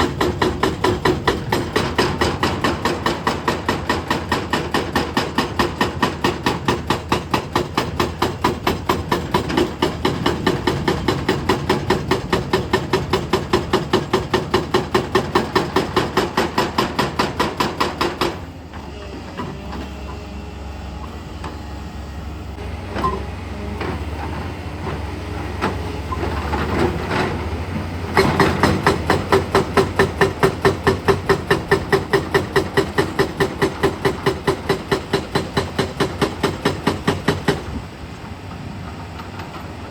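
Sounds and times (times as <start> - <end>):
hydraulic rock breaker hammering: 0.0 - 20.4, 22.6 - 37.8
diesel engine running: 18.4 - 34.0.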